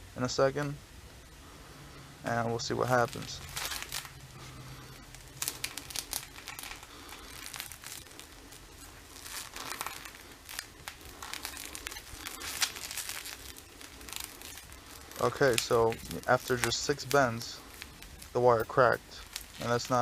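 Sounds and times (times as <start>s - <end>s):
crinkling plastic rustling: 2.2s - 20.0s.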